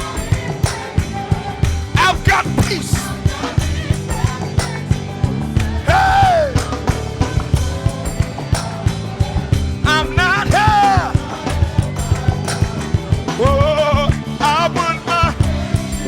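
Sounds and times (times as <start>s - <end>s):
gospel band playing: 0.0s - 16.0s
steady drum beat: 0.0s - 16.0s
person singing: 2.0s - 4.8s, 5.7s - 6.9s, 9.8s - 15.8s.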